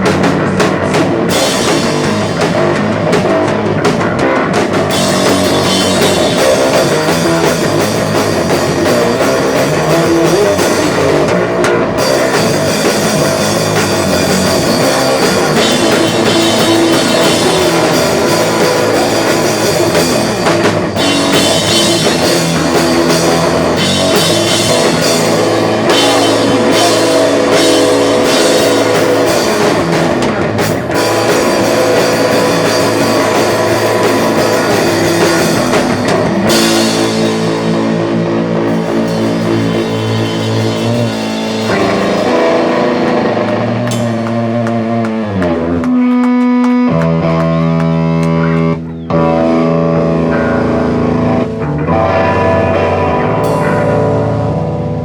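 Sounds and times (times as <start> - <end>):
drum kit: 0.0 - 55.0
guitar: 0.0 - 55.0
rock band playing live: 0.0 - 55.0.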